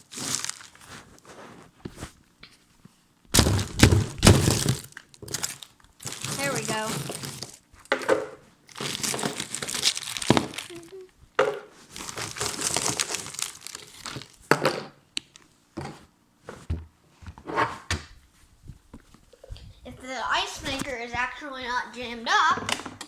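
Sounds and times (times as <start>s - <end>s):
plastic packaging crinkling: 0.0s - 1.2s, 3.4s - 7.7s, 8.7s - 11.1s, 11.8s - 14.5s.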